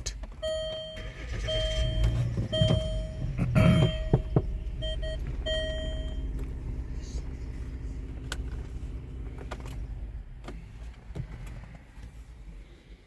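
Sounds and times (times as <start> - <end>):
car running hum: 0.0 - 13.0
electronic warning chime: 0.4 - 6.3.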